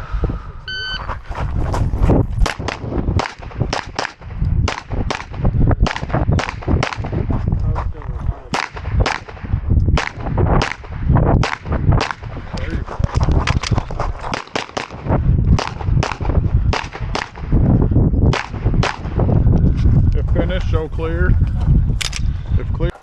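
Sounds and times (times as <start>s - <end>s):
rapid pistol shots: 2.4s - 7.2s, 8.5s - 12.4s, 14.3s - 17.5s.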